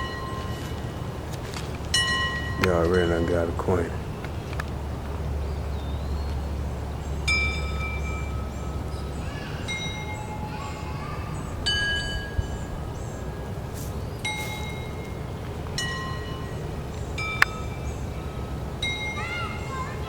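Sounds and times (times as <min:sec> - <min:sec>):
metal chimes ringing: 0:07.3 - 0:10.9.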